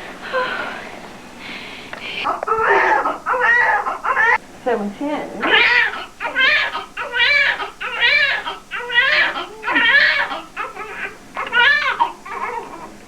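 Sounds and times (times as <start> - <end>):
newborn baby crying: 2.2 - 4.4, 5.4 - 13.0.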